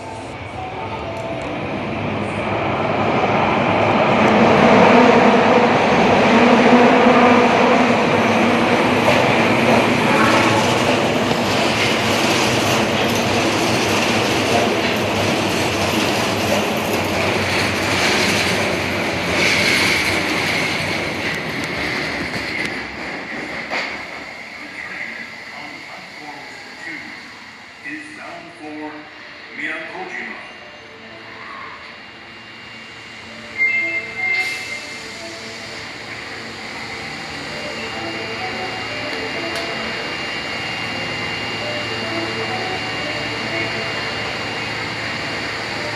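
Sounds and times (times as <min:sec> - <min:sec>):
subway train running: 0:00.0 - 0:45.9.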